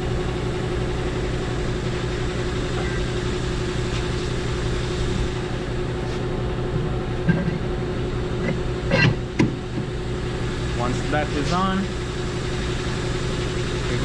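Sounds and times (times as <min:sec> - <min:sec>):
mechanical hum: 0:00.0 - 0:14.0.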